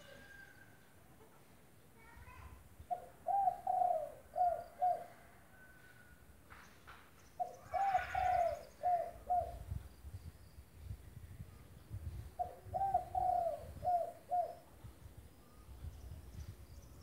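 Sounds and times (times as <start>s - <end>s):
faint bird chirps: 2.0s - 17.0s
dove cooing: 2.9s - 5.4s, 7.4s - 9.8s, 12.4s - 14.7s.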